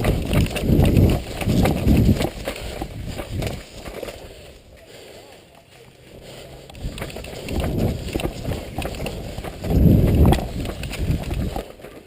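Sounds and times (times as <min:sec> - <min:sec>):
gear knocking: 0:00.0 - 0:04.2, 0:06.7 - 0:12.0
wind rumbling on microphone: 0:00.0 - 0:04.8, 0:06.1 - 0:11.7
running footsteps: 0:00.0 - 0:12.0.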